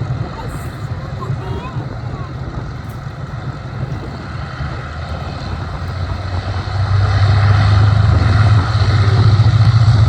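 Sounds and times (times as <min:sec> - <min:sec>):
aircraft engines running: 0:00.0 - 0:10.0.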